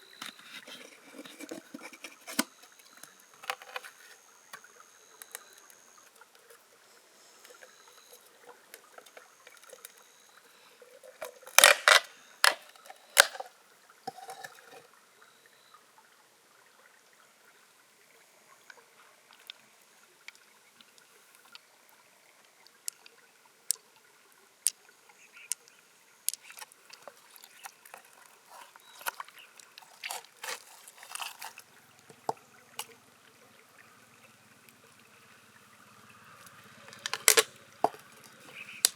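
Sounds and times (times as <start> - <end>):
water trickling: 0.0 - 38.9
shells clicking and knocking: 11.6 - 13.4, 36.9 - 38.9.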